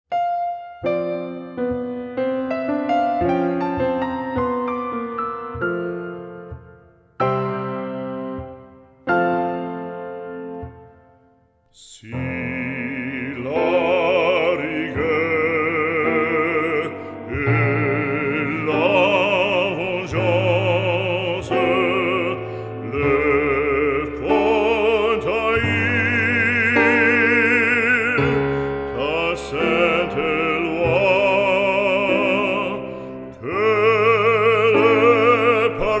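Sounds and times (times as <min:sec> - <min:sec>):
operatic singing: 0:11.7 - 0:36.0.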